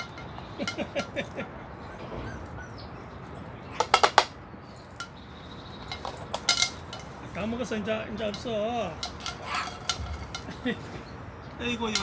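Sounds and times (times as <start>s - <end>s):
sharp metallic clinks: 0.0s - 12.0s
faint high squeaks: 1.7s - 4.0s.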